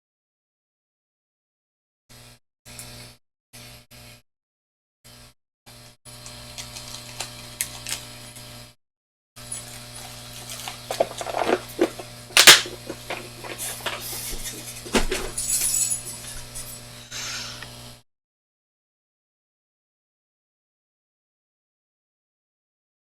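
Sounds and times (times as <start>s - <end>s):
steady electrical hum: 9.6s - 17.9s
small objects clicking on workbench: 10.0s - 15.4s.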